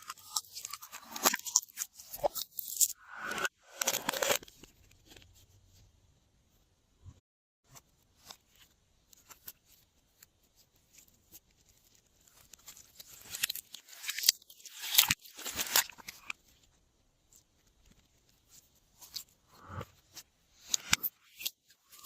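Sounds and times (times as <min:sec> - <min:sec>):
slime squishing and crackling: 0:10.9 - 0:16.6.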